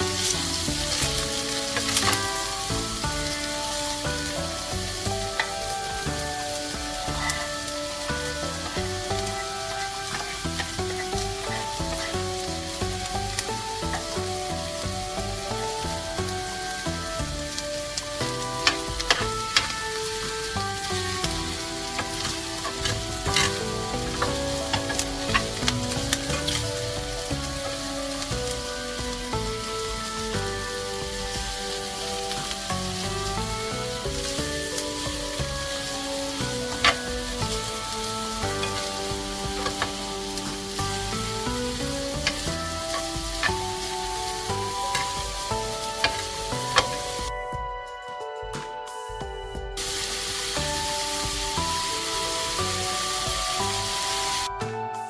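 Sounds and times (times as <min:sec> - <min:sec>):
food sizzling in a pan: 0:00.0 - 0:47.5, 0:49.8 - 0:55.0
background music: 0:00.0 - 0:55.0.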